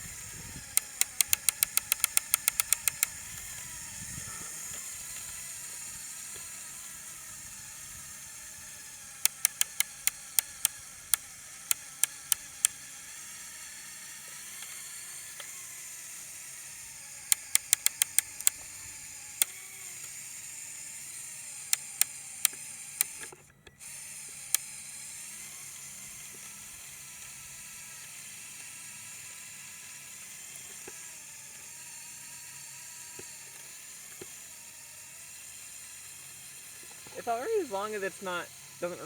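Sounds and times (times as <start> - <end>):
toy model motor running: 0.0 - 39.0
plastic gears clicking: 0.4 - 3.2, 9.2 - 12.8, 17.2 - 20.1, 21.6 - 23.4.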